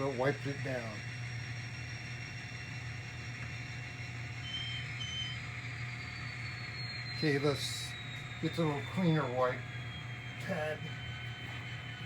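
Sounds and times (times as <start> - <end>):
model engine running sound: 0.0 - 12.0.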